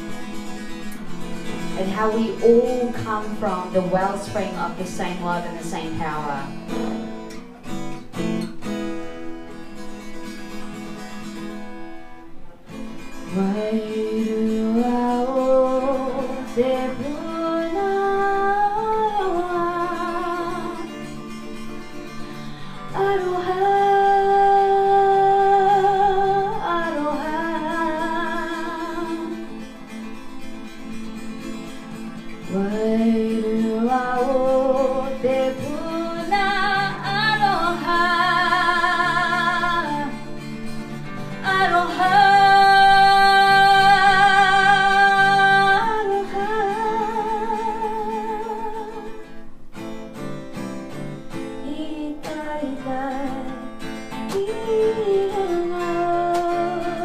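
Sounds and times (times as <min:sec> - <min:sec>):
strummed acoustic guitar: 0:00.0 - 0:57.0
woman singing with vibrato: 0:01.3 - 0:07.0, 0:13.1 - 0:21.3, 0:22.2 - 0:29.7, 0:32.4 - 0:49.3, 0:51.4 - 0:57.0.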